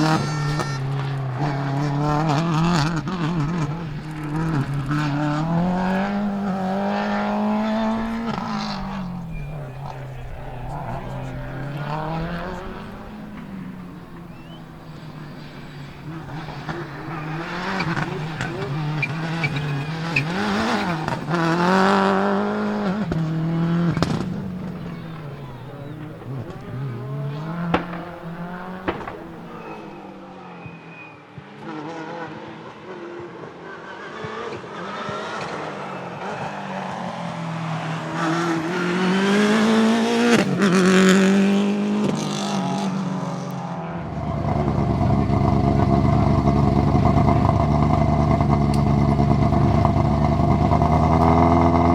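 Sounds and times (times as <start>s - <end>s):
rally car engine revving: 0.0s - 30.6s, 31.5s - 51.9s
anti-lag bangs: 2.1s - 30.4s.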